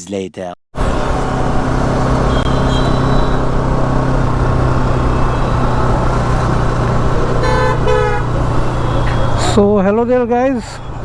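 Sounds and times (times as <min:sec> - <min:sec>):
road traffic noise: 0:00.7 - 0:11.0
car horn: 0:00.8 - 0:09.6
vehicle engine running: 0:00.8 - 0:09.9.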